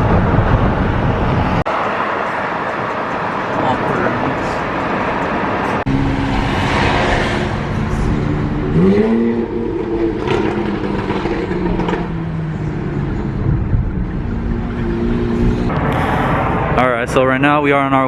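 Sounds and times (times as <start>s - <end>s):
road noise: 0.0s - 18.0s.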